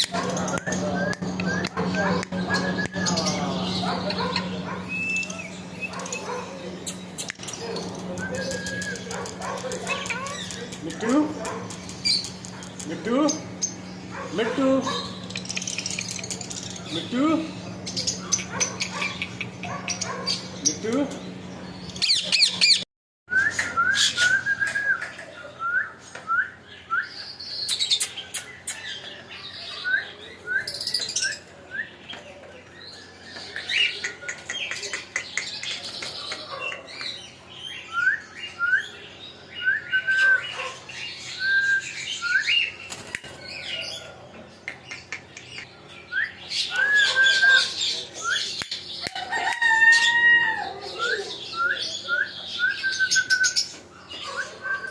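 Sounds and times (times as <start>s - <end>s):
parrot scratchy calls: 4.0s - 12.8s.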